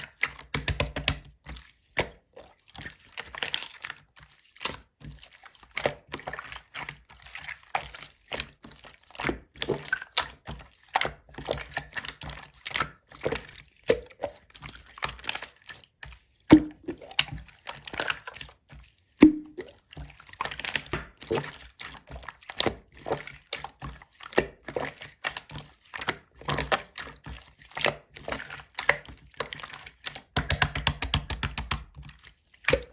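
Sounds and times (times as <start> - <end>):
air-bubble pops: 16.5 - 17.0, 19.2 - 19.6.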